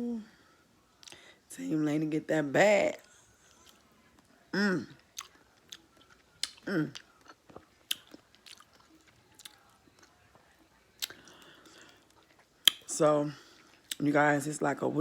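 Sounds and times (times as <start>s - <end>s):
chewing with mouth clicks: 5.0s - 14.0s
lip smacks: 5.1s - 10.4s, 11.0s - 12.9s.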